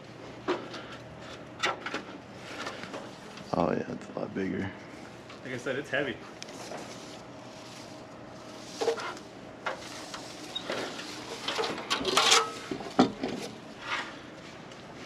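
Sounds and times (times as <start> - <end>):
knocks and clunks of fixture parts: 11.5 - 13.5
scrape: 13.8 - 14.2.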